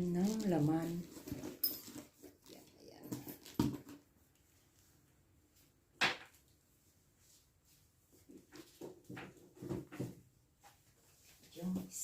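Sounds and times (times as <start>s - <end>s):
handbag knocks and rustles: 3.0s - 4.0s.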